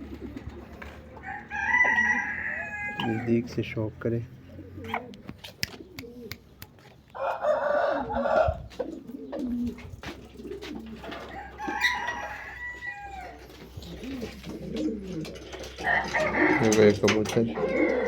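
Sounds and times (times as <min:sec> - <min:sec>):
pigeons cooing: 0:00.0 - 0:18.0
rooster crowing: 0:01.1 - 0:03.3, 0:07.2 - 0:08.6, 0:11.2 - 0:13.5, 0:15.8 - 0:16.9, 0:17.6 - 0:18.0.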